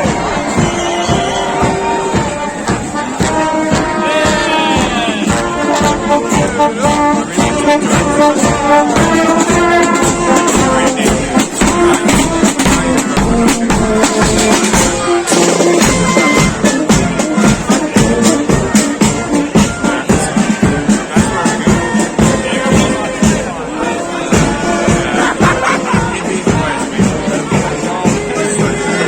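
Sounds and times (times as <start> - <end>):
brass band playing: 0.0 - 29.0
drum and percussion beats: 0.0 - 29.0.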